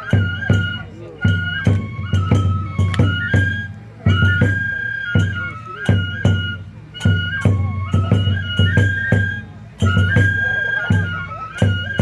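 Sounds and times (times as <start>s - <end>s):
bamboo flute melody: 0.0s - 12.0s
taiko drum strikes: 1.3s - 5.2s.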